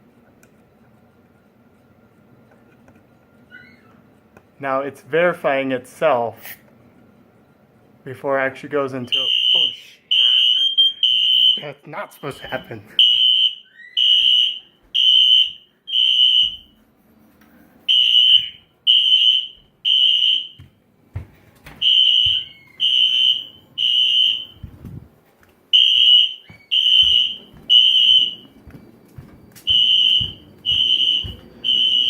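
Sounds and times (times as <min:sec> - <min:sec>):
smoke alarm beeping: 0:09.0 - 0:16.8, 0:17.9 - 0:20.7, 0:21.8 - 0:24.8, 0:25.7 - 0:32.0.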